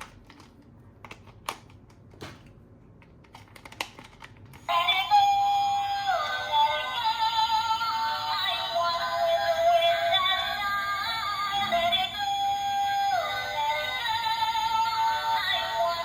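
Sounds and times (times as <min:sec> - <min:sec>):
synthetic sung melody: 0:04.7 - 0:16.0.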